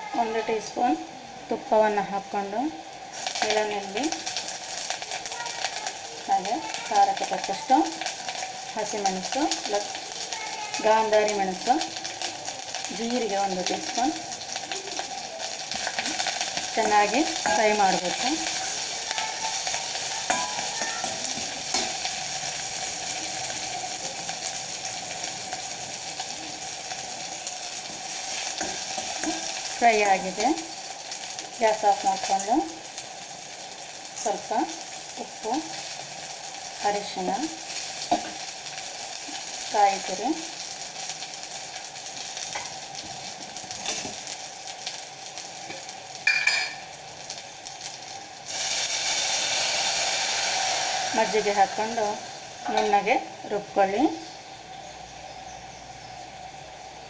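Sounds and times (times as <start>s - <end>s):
ghee sizzling in a pan: 0.0s - 57.0s.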